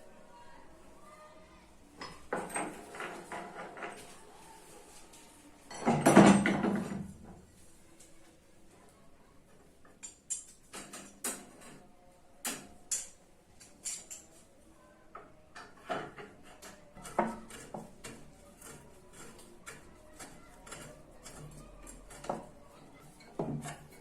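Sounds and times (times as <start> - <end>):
metal tool parts clinking: 12.9 - 14.3.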